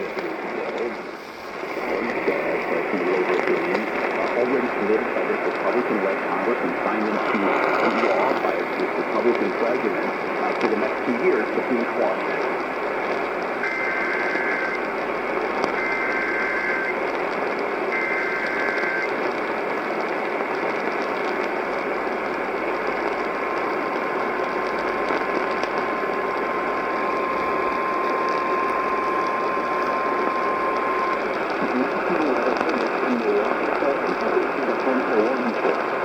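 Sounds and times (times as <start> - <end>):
radio static hiss: 0.0 - 36.0
steady single-pitch attention tone: 22.5 - 31.2.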